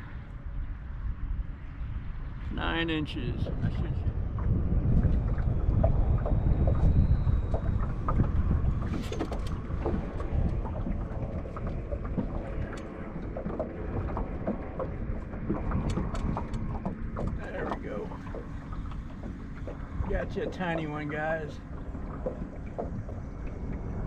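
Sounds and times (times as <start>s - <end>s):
wind buffeting microphone: 0.0s - 24.0s
clicks and knocks of gear: 8.8s - 10.0s, 15.5s - 17.5s.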